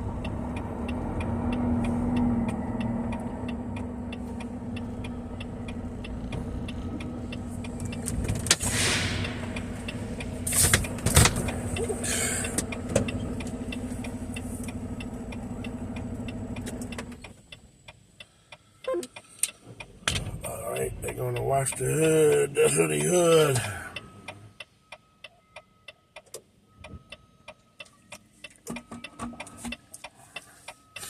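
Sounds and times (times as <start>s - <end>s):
diesel truck engine idling: 0.0s - 18.8s
light ticking: 0.0s - 31.0s
short air hisses: 8.6s - 9.4s.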